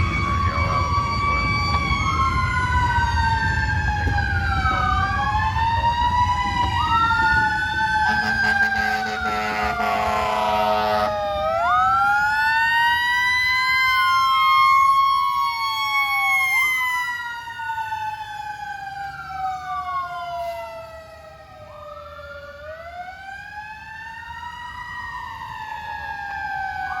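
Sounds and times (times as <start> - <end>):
fire truck sirens wailing: 0.0 - 27.0
horn blast: 8.1 - 11.1.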